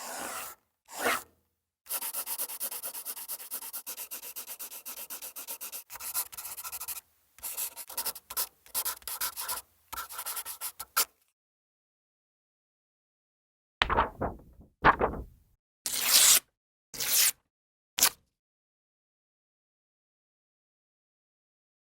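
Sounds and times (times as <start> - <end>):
scratching strokes: 13.9 - 15.4.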